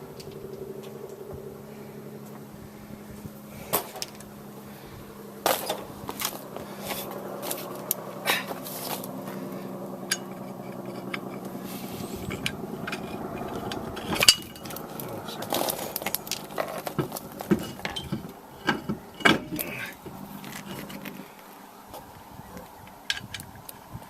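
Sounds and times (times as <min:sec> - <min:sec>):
steady hum: 0:00.0 - 0:24.0
lug nuts clicking and clanking: 0:05.4 - 0:23.9.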